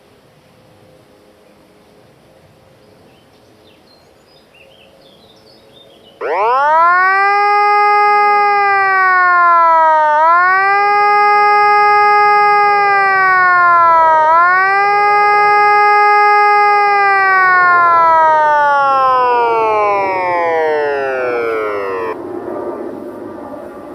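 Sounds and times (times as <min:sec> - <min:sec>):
electronic warning siren wailing: 0:06.2 - 0:22.2.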